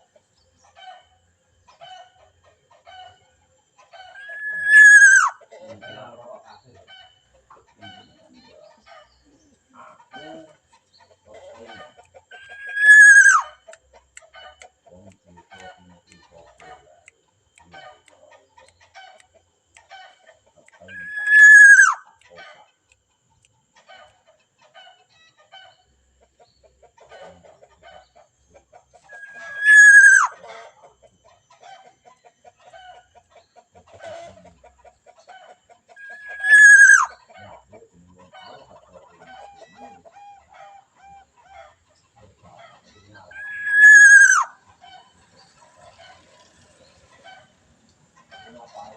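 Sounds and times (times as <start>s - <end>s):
faint bird chirps: 0.0s - 47.6s
loud harsh bird call: 4.1s - 6.1s, 12.3s - 13.6s, 20.9s - 22.2s, 29.1s - 30.5s, 36.0s - 37.3s, 43.0s - 44.6s.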